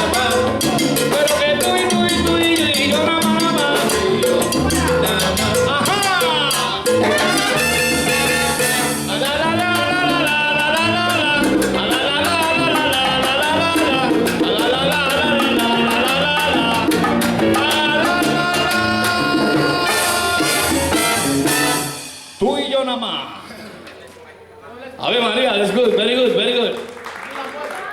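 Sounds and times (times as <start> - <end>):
person singing: 0.0 - 7.6, 9.0 - 21.2
percussion groove: 0.0 - 22.7
salsa band playing: 0.0 - 22.9
trumpets: 5.6 - 10.0, 18.0 - 22.4.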